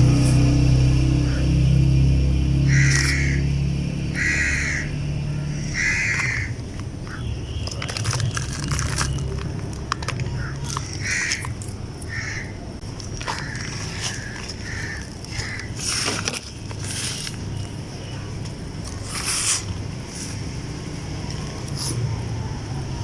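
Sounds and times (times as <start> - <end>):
bird calling: 2.6 - 8.0, 10.0 - 12.6, 13.2 - 16.2
damp chunks crumbling: 6.7 - 12.1, 12.8 - 20.4.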